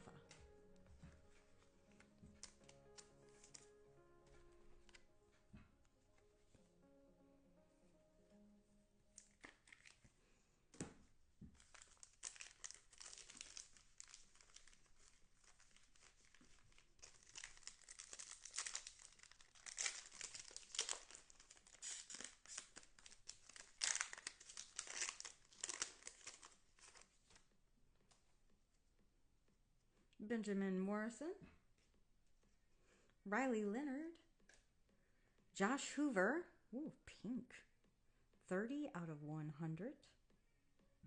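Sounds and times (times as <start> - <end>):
cards being handled: 0.0 - 5.4, 9.1 - 27.4
wrapper tearing and crinkling: 2.0 - 3.8, 9.2 - 10.1, 11.6 - 27.4.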